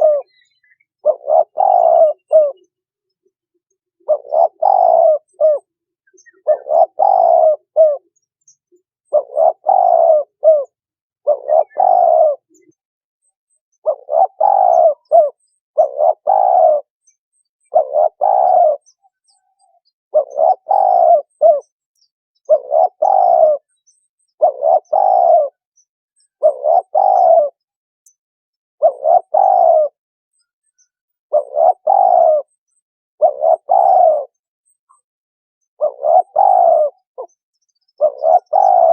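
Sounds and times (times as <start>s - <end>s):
dove cooing: 0.0s - 2.7s, 4.0s - 8.2s, 9.1s - 12.8s, 13.8s - 16.9s, 17.7s - 21.7s, 22.4s - 23.7s, 24.3s - 25.6s, 26.4s - 27.7s, 28.8s - 30.0s, 31.3s - 32.6s, 33.2s - 34.4s, 35.7s - 38.9s.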